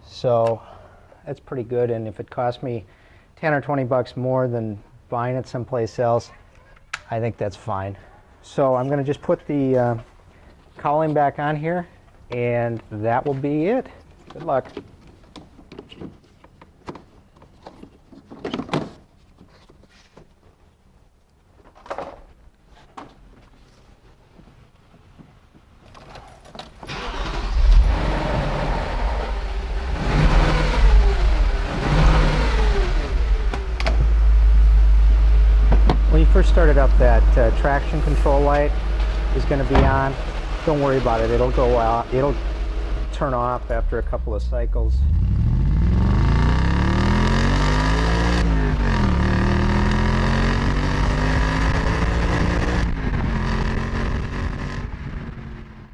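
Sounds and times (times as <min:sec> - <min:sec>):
car engine starting and running: 0:26.8 - 0:55.8.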